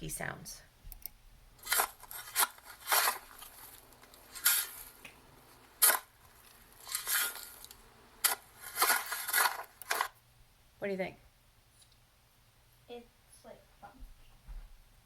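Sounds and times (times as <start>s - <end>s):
shovel scraping into soil: 1.6s - 5.1s, 5.7s - 10.2s.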